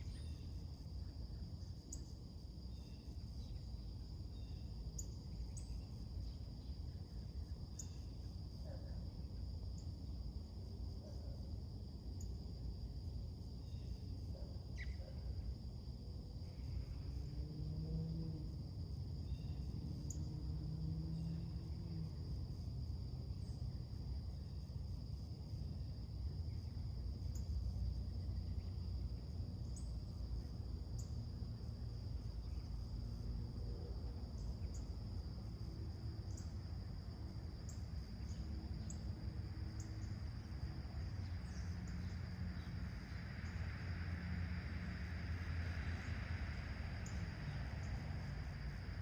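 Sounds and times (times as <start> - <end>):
insect chorus trilling: 0.0 - 49.0
distant traffic rumble: 39.1 - 49.0.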